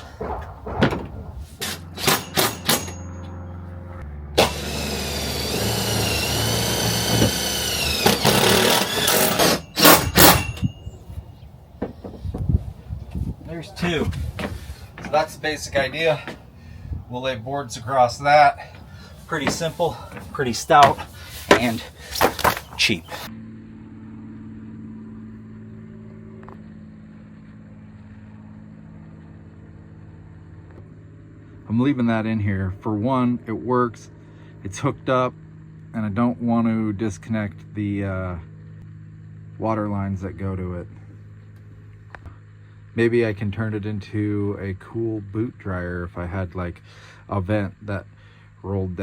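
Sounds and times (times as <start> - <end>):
loud knocks: 0.0 - 2.8, 11.8 - 12.5, 14.0 - 16.6, 18.7 - 22.9
motor humming: 0.0 - 23.3
power tool whining and grinding: 1.5 - 10.7, 17.5 - 23.3.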